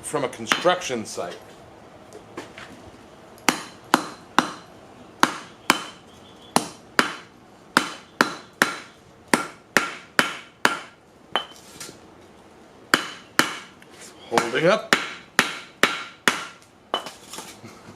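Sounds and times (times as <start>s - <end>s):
hammer striking steel: 3.5s - 6.0s, 6.6s - 11.6s, 12.9s - 13.7s, 14.3s - 17.2s.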